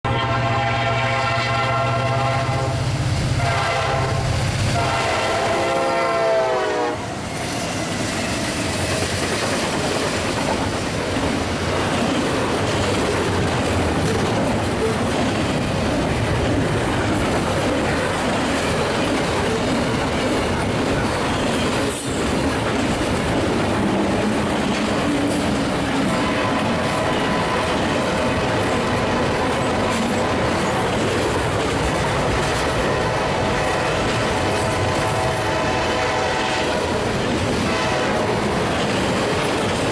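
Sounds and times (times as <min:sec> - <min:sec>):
locomotive air horn: 0:00.0 - 0:07.3, 0:26.2 - 0:27.8, 0:32.1 - 0:37.0, 0:37.6 - 0:38.4
train wheels clicking over rails: 0:07.1 - 0:39.9.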